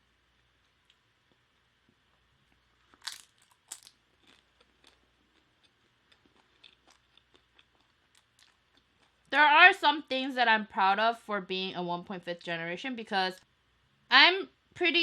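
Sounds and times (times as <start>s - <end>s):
chewing with soft crackles: 0.0s - 9.3s
person biting crunchy food: 2.5s - 9.2s.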